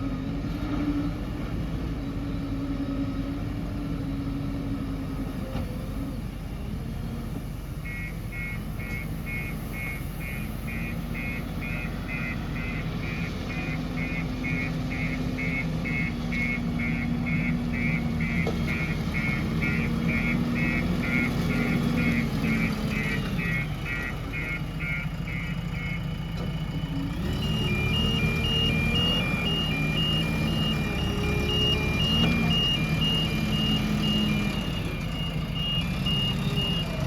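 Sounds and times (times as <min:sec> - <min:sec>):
diesel engine under load: 0:00.0 - 0:37.0
reversing alarm beeping: 0:07.8 - 0:37.0.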